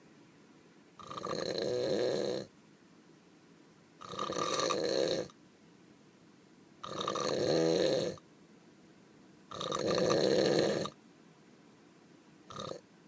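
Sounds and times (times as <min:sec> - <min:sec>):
short snort: 0:01.0 - 0:02.5, 0:04.0 - 0:05.3, 0:06.8 - 0:08.2, 0:09.5 - 0:11.0, 0:12.5 - 0:12.8
person snoring: 0:04.0 - 0:05.3, 0:06.8 - 0:08.2, 0:09.5 - 0:10.9, 0:12.5 - 0:12.8.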